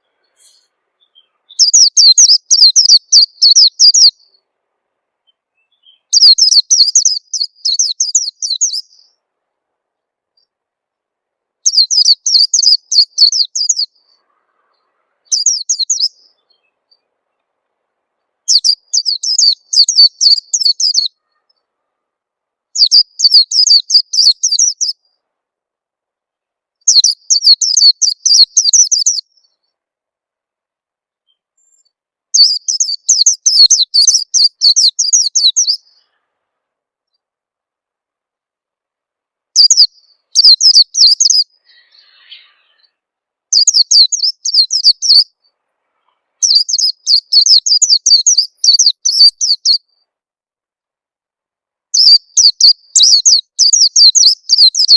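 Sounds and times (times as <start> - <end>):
bird fast high chirps: 0.0 - 4.4, 5.2 - 9.2, 11.6 - 17.1, 18.5 - 21.7, 22.8 - 25.2, 26.9 - 29.8, 31.2 - 36.2, 39.6 - 50.0, 52.0 - 54.9.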